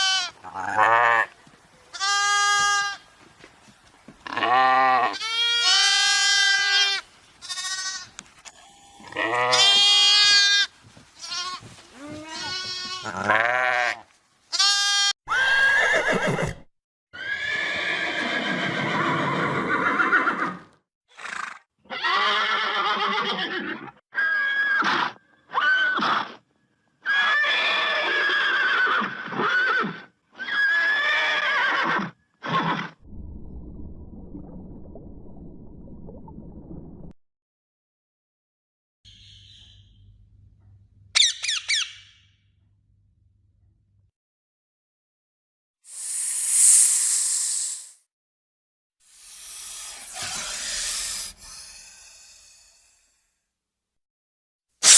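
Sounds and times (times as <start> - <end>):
farm animal bleating: 0.0 - 3.1, 4.2 - 8.2, 8.8 - 15.8.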